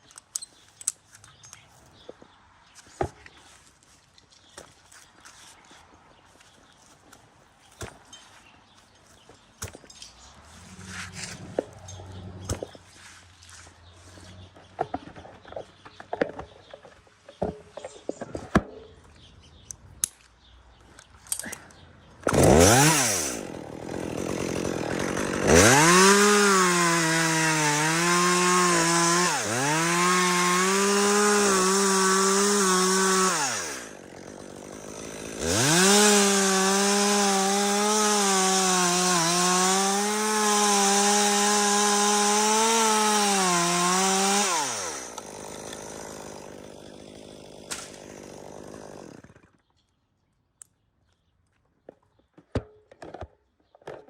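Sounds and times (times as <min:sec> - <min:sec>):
chainsaw cutting wood: 0:10.5 - 0:12.9, 0:22.2 - 0:49.7.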